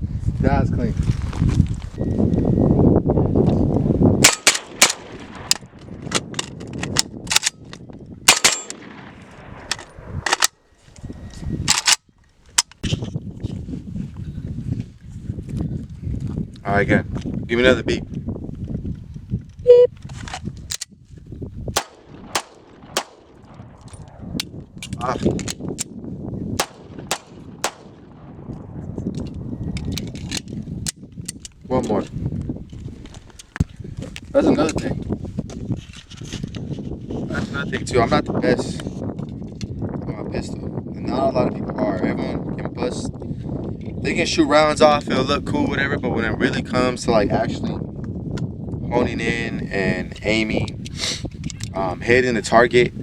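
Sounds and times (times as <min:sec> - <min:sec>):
wind buffeting microphone: 0:00.0 - 0:53.0
gunshots: 0:04.2 - 0:05.8, 0:08.3 - 0:10.5, 0:21.8 - 0:24.2, 0:26.6 - 0:28.4.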